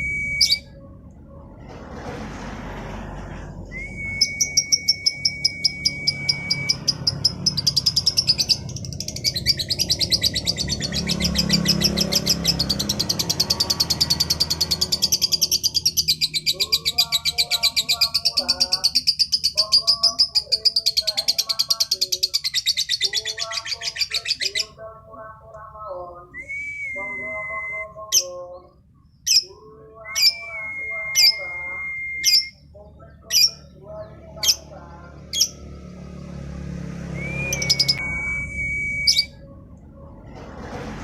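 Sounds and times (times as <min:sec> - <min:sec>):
lower warbling calls: 0:03.7 - 0:21.6, 0:37.0 - 0:39.8
bird chattering trill: 0:04.2 - 0:24.7
sharp bird chirps: 0:37.2 - 0:38.4.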